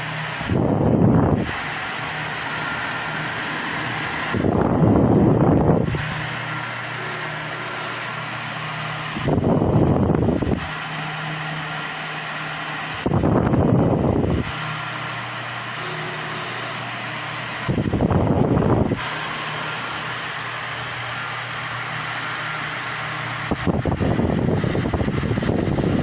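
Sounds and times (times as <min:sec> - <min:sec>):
electric fan humming: 0:00.0 - 0:26.0
fan air rushing into microphone: 0:00.0 - 0:26.0.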